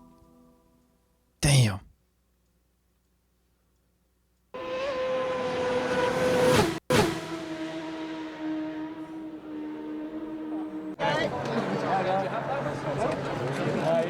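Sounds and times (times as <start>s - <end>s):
motorcycle engine passing at high revs: 4.6s - 13.3s.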